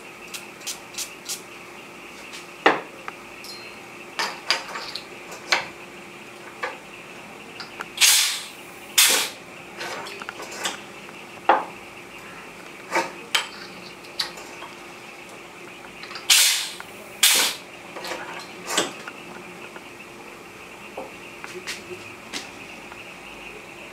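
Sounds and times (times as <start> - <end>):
bottles and metal tooling clinking: 3.4 - 5.5
short bursts of air: 8.0 - 9.4, 16.3 - 17.6.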